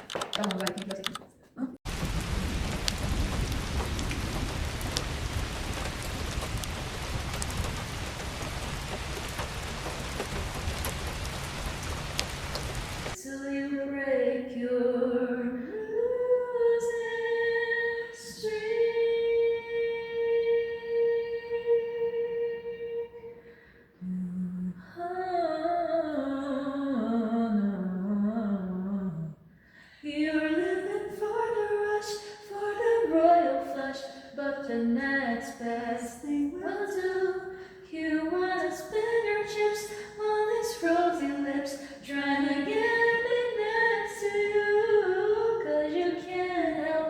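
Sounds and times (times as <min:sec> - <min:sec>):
raindrop ticks: 0:00.0 - 0:01.3, 0:01.9 - 0:13.2
low rumble: 0:01.9 - 0:13.2
steady rain falling: 0:01.9 - 0:13.2
woman singing: 0:13.2 - 0:29.4, 0:30.0 - 0:47.0.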